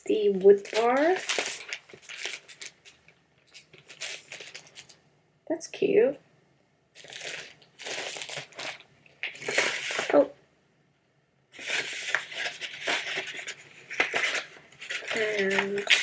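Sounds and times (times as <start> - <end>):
packaging rustling and tearing: 0.4 - 5.0, 7.0 - 10.3, 11.6 - 16.0.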